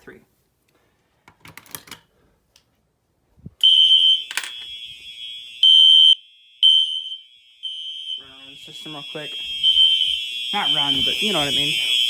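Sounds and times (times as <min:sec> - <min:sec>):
fire alarm horn: 0:03.6 - 0:12.0.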